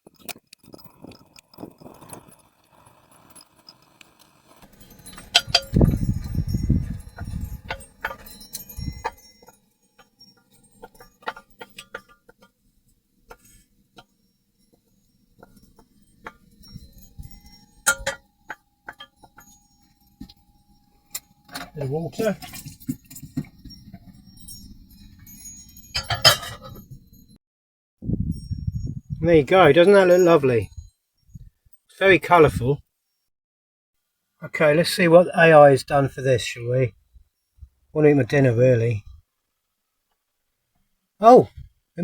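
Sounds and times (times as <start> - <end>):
utensils scraping and clattering: 0.1 - 12.4, 15.4 - 20.4, 21.0 - 27.0
metal utensils clinking on a pan: 4.6 - 12.4, 15.4 - 20.4, 21.1 - 27.0.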